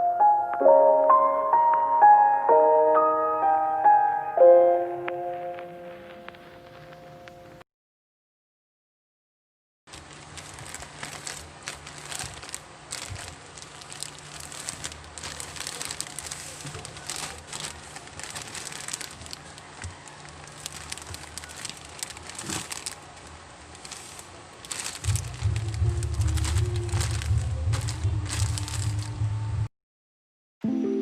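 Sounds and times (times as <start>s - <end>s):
packaging crinkling and rustling: 9.9s - 29.3s
faint low hum: 10.0s - 29.7s.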